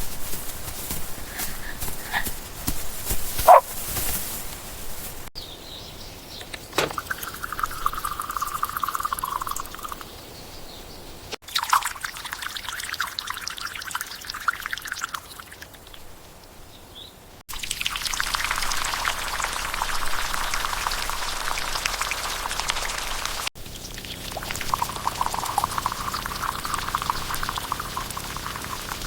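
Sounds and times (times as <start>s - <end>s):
fine crackling: 0.0s - 5.3s
dripping: 6.4s - 10.0s, 11.4s - 16.1s, 17.5s - 29.0s
liquid pouring and trickling: 6.7s - 10.1s, 11.4s - 16.1s, 17.5s - 29.0s.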